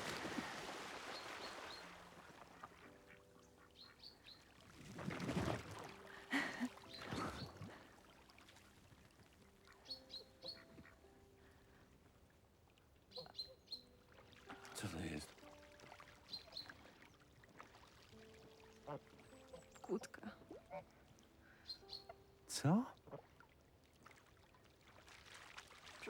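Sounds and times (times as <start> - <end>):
ducks quacking: 10.2 - 11.0.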